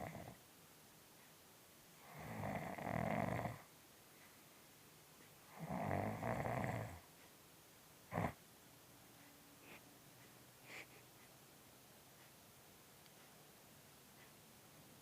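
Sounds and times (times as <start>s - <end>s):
cat snoring loudly: 0.0s - 0.4s, 2.0s - 3.7s, 5.5s - 7.0s, 8.1s - 8.4s
cat snort: 2.0s - 3.6s, 5.5s - 7.0s, 8.1s - 8.4s.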